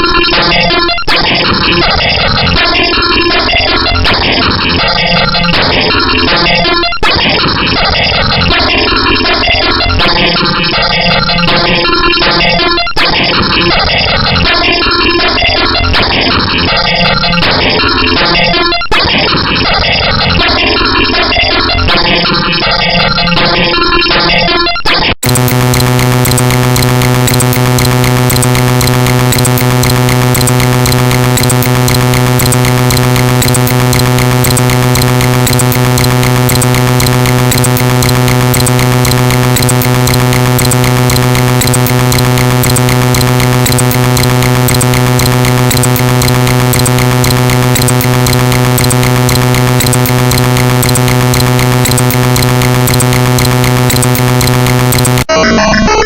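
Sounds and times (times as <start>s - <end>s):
harsh computer buzz: 25.2s - 55.5s.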